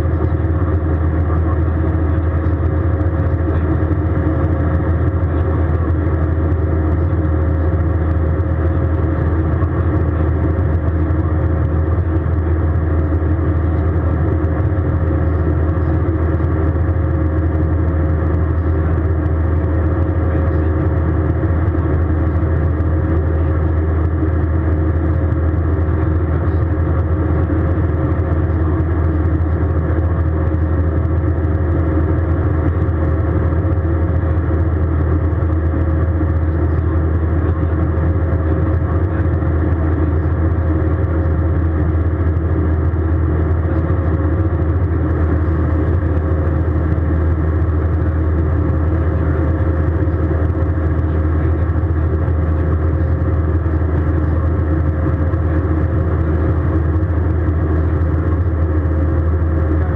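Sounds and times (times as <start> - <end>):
airplane cabin drone: 0.0 - 59.9.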